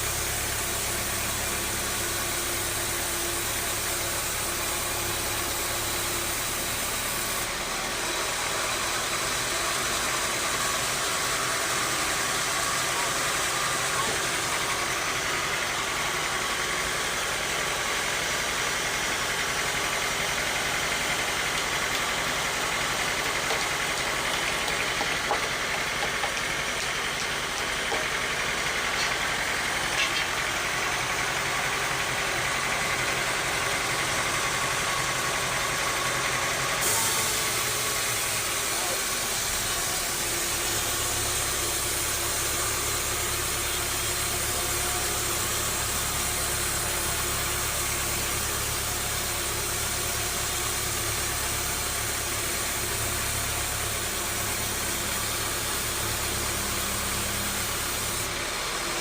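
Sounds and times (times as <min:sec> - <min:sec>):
sawmill machinery running: 0:00.0 - 0:59.0.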